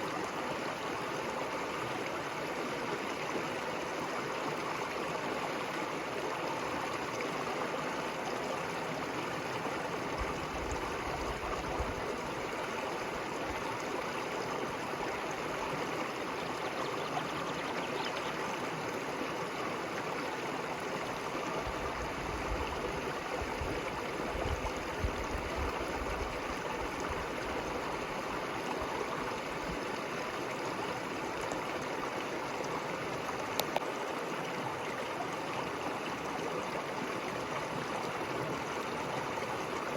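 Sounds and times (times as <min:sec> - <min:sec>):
river water flowing: 0:00.0 - 0:39.9
faint clicks: 0:33.5 - 0:33.9.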